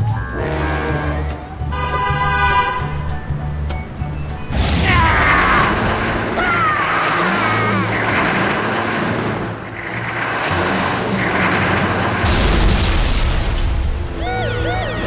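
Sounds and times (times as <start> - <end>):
background music with bass: 0.0 - 15.0
noisy rumble: 3.2 - 15.0
sudden loud crash: 4.5 - 6.4, 12.2 - 14.7.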